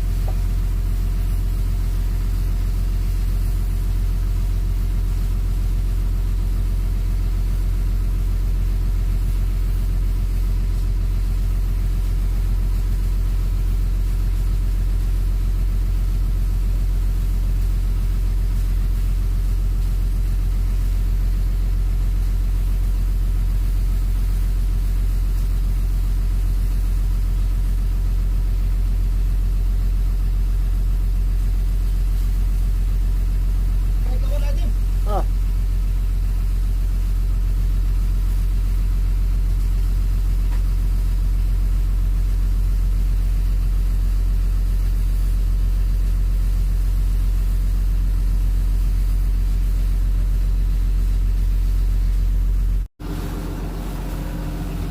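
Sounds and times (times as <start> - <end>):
excavator diesel engine droning: 53.0 - 54.9.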